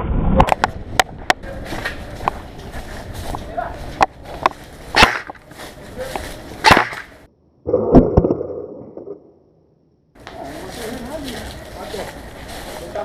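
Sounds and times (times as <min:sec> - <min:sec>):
airsoft gun shots cracking: 0:05.0 - 0:05.4, 0:06.6 - 0:07.2.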